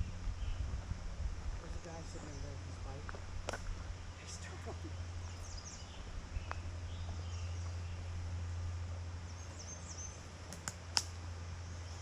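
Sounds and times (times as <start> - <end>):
steady low rumble: 0.0 - 12.0
sharp clicks: 10.5 - 11.2.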